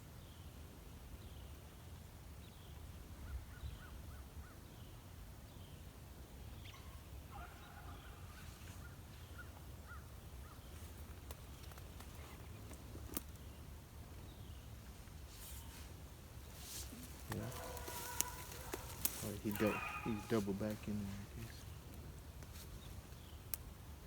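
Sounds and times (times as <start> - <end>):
bird chirping: 6.5 - 23.6
distant dogs baying: 6.6 - 10.6, 17.0 - 21.6.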